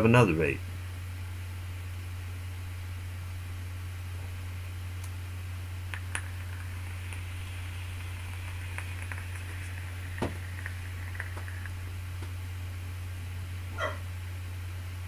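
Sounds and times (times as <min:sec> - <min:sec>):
low electrical hum: 0:00.0 - 0:15.0
faint clicks and crackles: 0:05.9 - 0:12.4.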